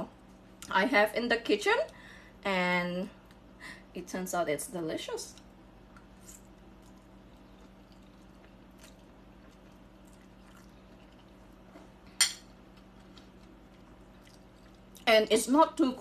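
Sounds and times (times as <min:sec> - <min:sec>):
steady low hum: 0:00.0 - 0:16.0
person eating: 0:05.4 - 0:15.0.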